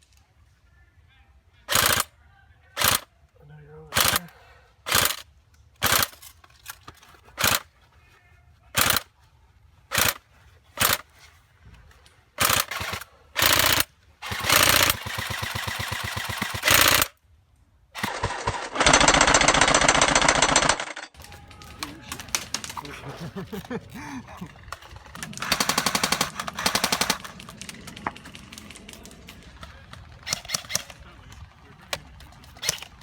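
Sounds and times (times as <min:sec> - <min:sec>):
airsoft gun full-auto bursts: 0:01.7 - 0:02.1, 0:02.8 - 0:03.1, 0:03.9 - 0:04.3, 0:04.9 - 0:05.2, 0:05.8 - 0:06.2, 0:07.4 - 0:07.6, 0:08.8 - 0:09.1, 0:09.9 - 0:10.2, 0:10.8 - 0:11.0, 0:12.4 - 0:17.2, 0:18.0 - 0:23.0, 0:24.8 - 0:29.3, 0:30.2 - 0:31.0, 0:32.5 - 0:33.0.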